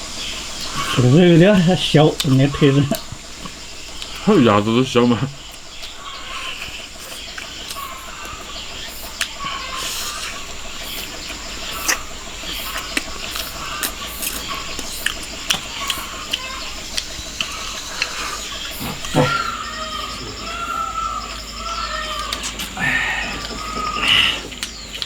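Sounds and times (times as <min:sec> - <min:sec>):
chickens clucking: 0:00.0 - 0:25.0
eating utensils clicking: 0:05.5 - 0:20.6.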